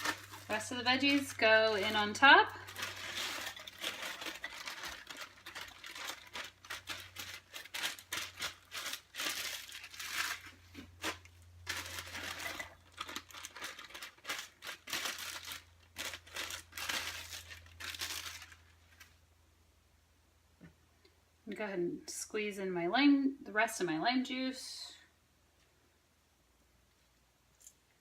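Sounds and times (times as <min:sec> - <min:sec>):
plastic bag crinkling: 0:00.0 - 0:19.2.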